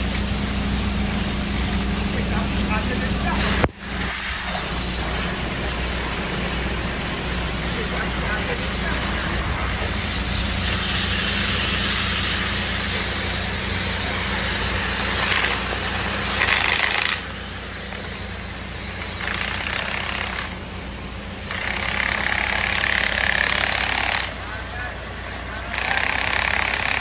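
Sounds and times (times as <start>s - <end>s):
loud even hiss: 0.0s - 20.4s
machine humming: 0.0s - 27.0s.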